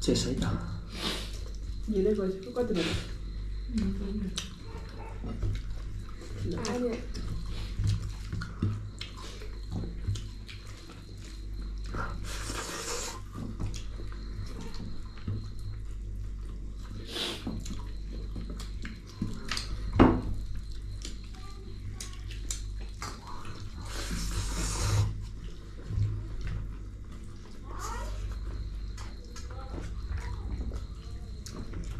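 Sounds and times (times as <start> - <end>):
short hissing: 0.9 - 1.3, 12.3 - 13.2
chewing and mouth clicks: 3.1 - 31.9.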